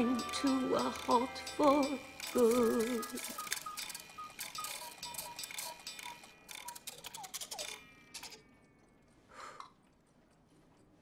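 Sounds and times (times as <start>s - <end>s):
clockwork ticking and clicking: 0.0s - 9.0s.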